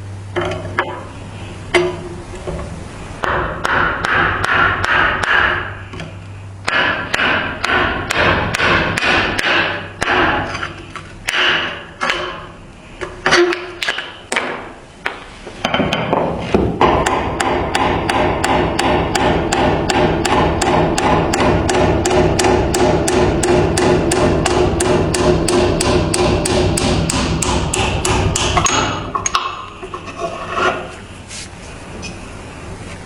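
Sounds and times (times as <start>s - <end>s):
scraping on knife: 29.9s - 31.5s.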